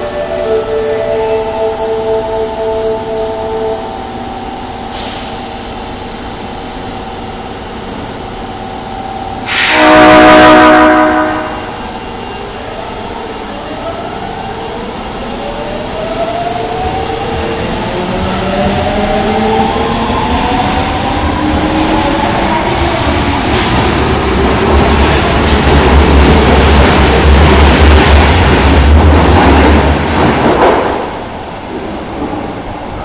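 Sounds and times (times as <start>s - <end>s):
train horn: 0.0s - 4.0s, 9.5s - 11.9s.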